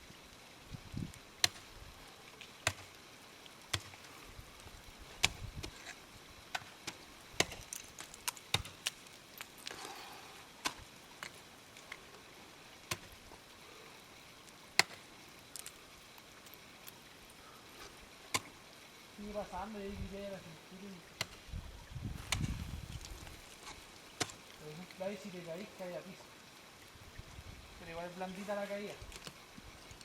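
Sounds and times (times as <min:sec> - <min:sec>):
ice tools chopping ice: 0:02.6 - 0:02.9, 0:03.7 - 0:04.0, 0:06.5 - 0:09.8.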